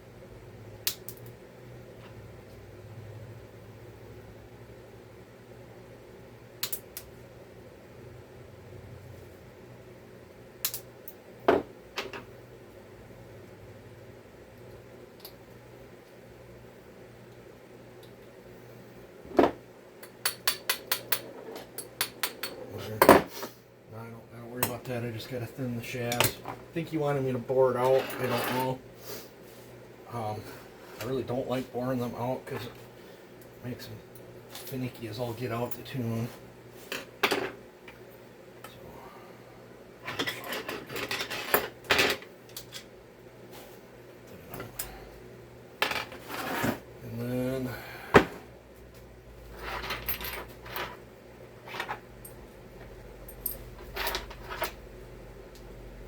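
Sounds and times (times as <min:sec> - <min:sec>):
metal parts and tools clinking: 0:53.3 - 0:54.8.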